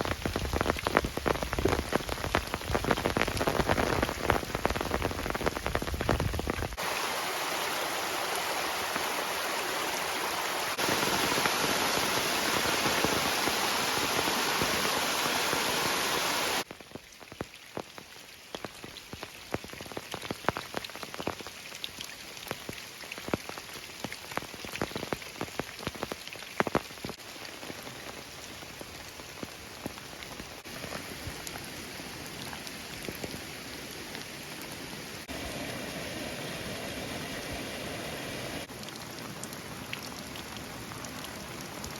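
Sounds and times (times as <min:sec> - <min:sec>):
raindrops striking: 0:00.0 - 0:09.4, 0:10.0 - 0:33.5
dense rain rush: 0:00.0 - 0:17.8, 0:23.2 - 0:41.9.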